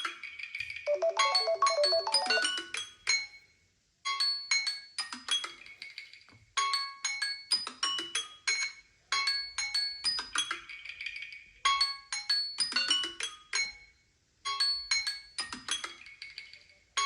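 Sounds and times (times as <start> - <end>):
marimba-like phone ringtone: 0.9 - 2.6.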